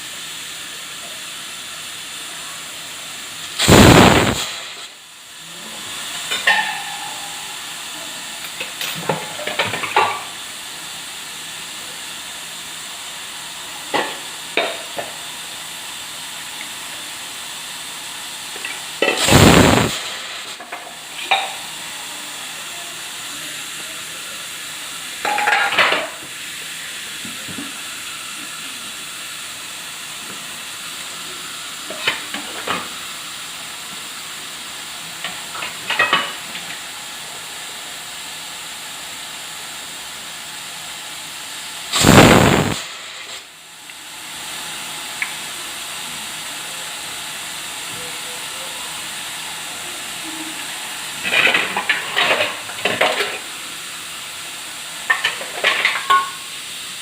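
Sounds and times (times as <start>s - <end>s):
steam puffs from weight: 0.0s - 16.2s, 17.3s - 37.0s, 40.2s - 46.4s
pressure cooker hissing: 0.0s - 57.0s
pressure cooker whistle blast: 3.6s - 4.9s, 19.2s - 20.2s, 41.9s - 43.0s.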